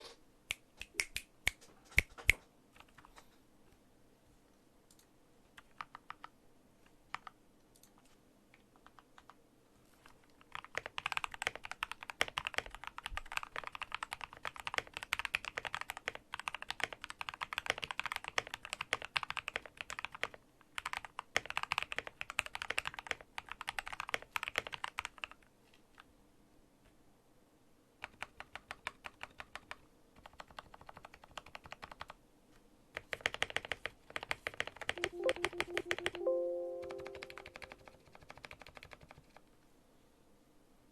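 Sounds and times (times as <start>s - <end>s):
mechanical keyboard typing: 4.9s - 6.4s, 7.1s - 8.0s, 8.8s - 9.4s, 10.4s - 25.4s, 28.0s - 32.2s, 33.0s - 39.5s.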